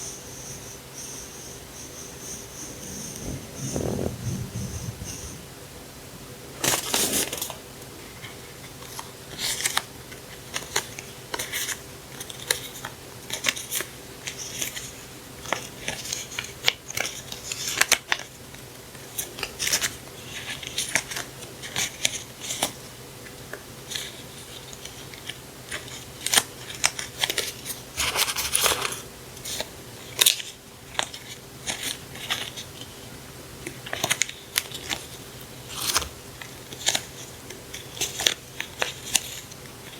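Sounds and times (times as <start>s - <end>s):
faint steady hum: 0.0s - 39.9s
packaging rustling and crinkling: 25.7s - 29.6s.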